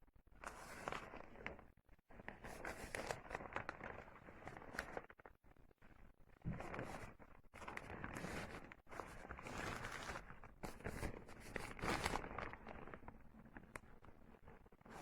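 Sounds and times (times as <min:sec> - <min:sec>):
plastic poncho rustling: 0:06.5 - 0:15.0.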